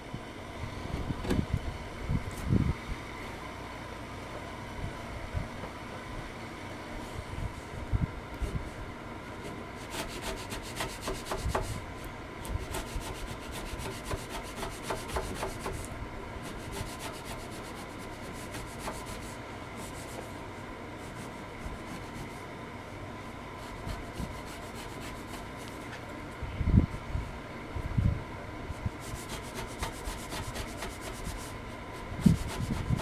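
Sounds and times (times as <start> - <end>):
chisel shaving wood: 9.8 - 11.8, 12.7 - 19.3, 29.0 - 31.5.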